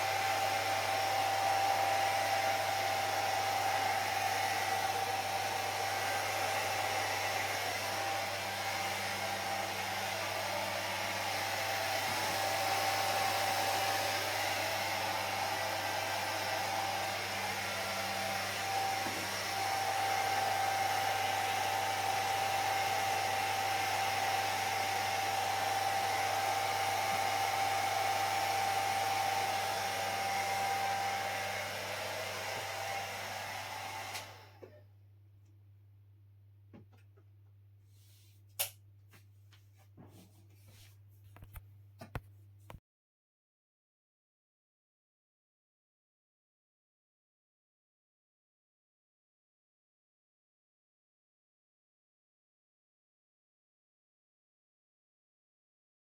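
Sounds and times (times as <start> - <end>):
hair dryer blowing: 0.0 - 34.8.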